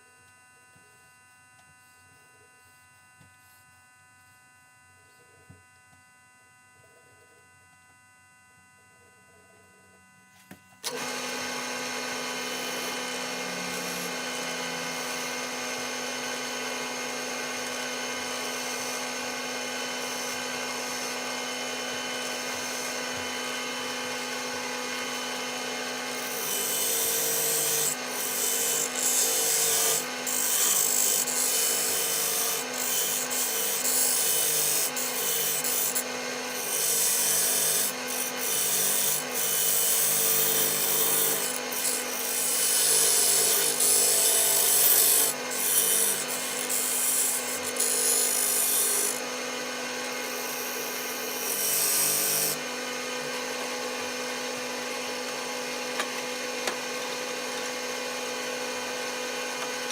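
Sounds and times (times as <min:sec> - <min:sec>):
wood lathe running: 0:10.8 - 0:57.2.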